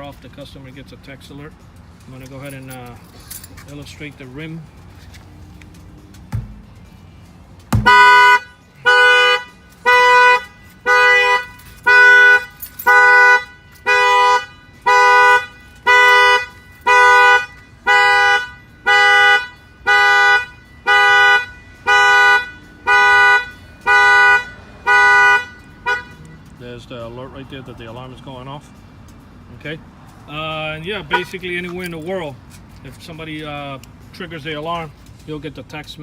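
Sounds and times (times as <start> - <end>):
sharp knock: 6.3 - 6.7, 7.7 - 8.1
car horn honking in pulses: 7.8 - 26.4, 31.0 - 31.4.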